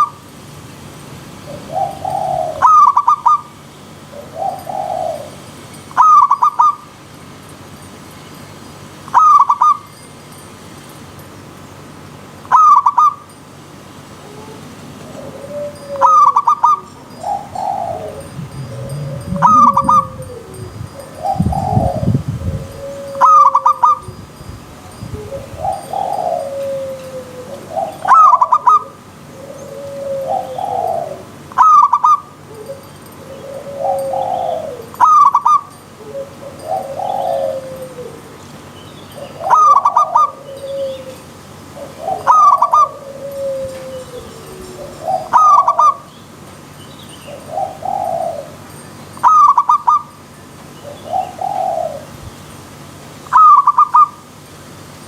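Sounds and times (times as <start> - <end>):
dove cooing: 1.4 - 3.5, 4.1 - 5.4, 14.2 - 24.1, 25.2 - 38.4, 39.2 - 46.1, 47.3 - 48.6, 49.2 - 50.1, 50.8 - 52.2, 53.3 - 54.2.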